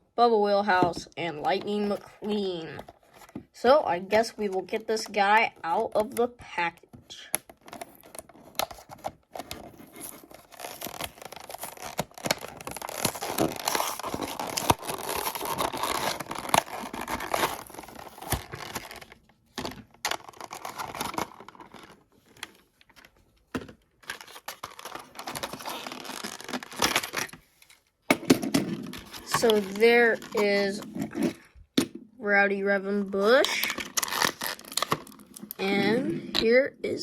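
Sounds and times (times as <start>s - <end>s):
cardboard and plastic ripping: 7.5s - 22.6s, 24.0s - 27.4s, 28.3s - 31.4s, 33.4s - 35.6s.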